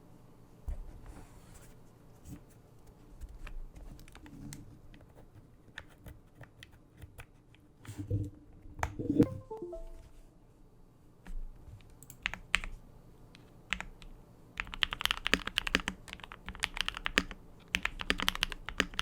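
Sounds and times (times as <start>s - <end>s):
mechanical keyboard keystrokes: 13.7s - 19.0s.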